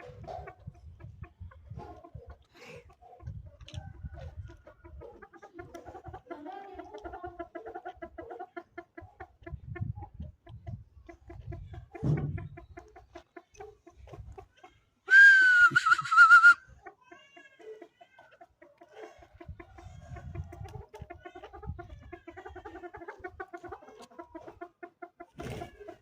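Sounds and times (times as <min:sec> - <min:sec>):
partridge clucking calls: 0:07.0 - 0:14.8.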